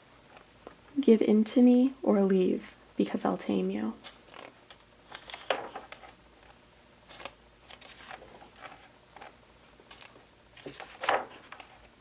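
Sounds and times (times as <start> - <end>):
paper pages rustling: 4.0 - 12.0.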